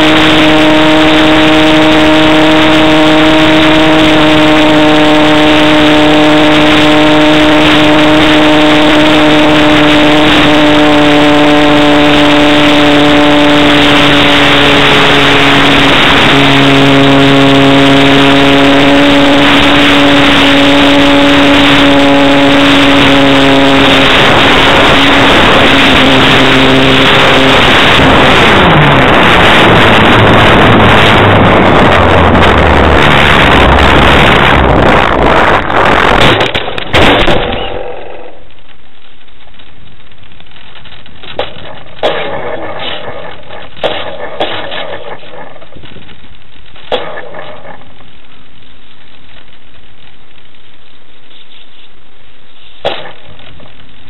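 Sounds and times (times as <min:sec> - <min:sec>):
model airplane motor drone: 0:00.0 - 0:38.6
wind on microphone: 0:00.0 - 0:38.8.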